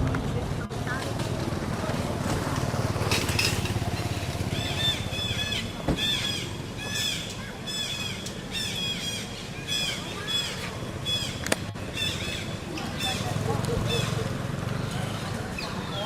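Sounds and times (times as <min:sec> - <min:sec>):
high chirping calls: 0:03.7 - 0:16.0.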